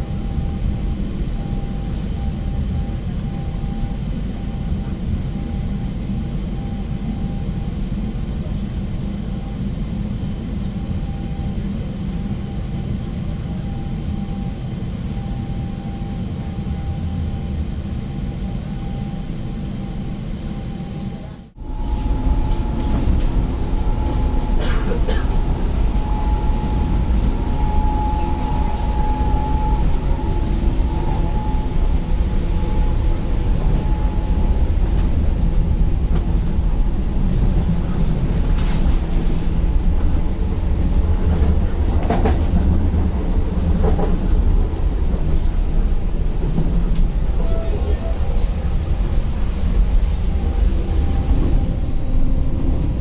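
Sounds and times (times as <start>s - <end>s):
train wheels rumbling: 0.0s - 53.0s
high electric whine: 21.6s - 37.2s.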